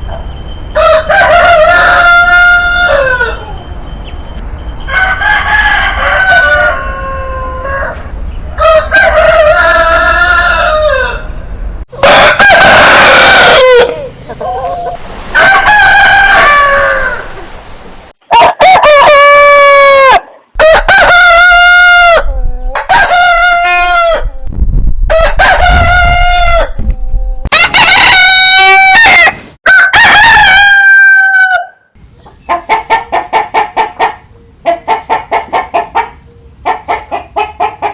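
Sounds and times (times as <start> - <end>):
roosters crowing: 0.7 - 3.7, 4.9 - 17.5, 18.3 - 24.4, 25.1 - 26.8, 27.5 - 31.9.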